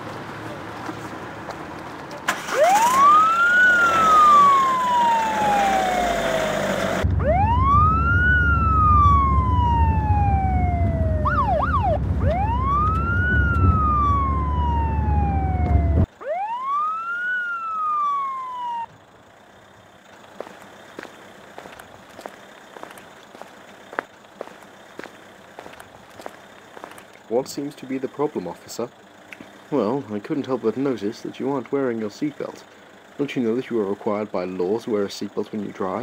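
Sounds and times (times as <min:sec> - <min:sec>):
police siren wailing: 0:02.3 - 0:19.0
low steady rumble: 0:07.0 - 0:16.2.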